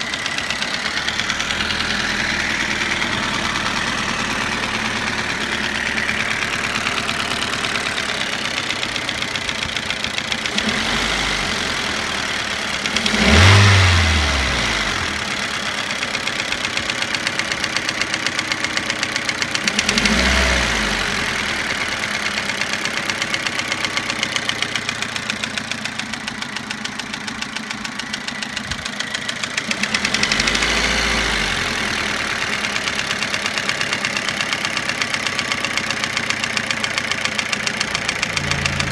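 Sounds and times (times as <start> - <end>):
car engine idling with knock: 0.0 - 20.4, 21.5 - 31.2, 32.0 - 38.9
engine revving: 10.2 - 15.8, 19.6 - 21.8, 29.6 - 32.6, 36.6 - 38.9.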